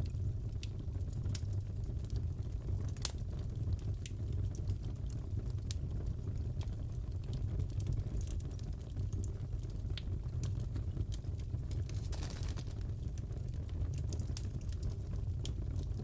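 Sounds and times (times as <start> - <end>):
fireplace crackling: 10.4 - 16.0.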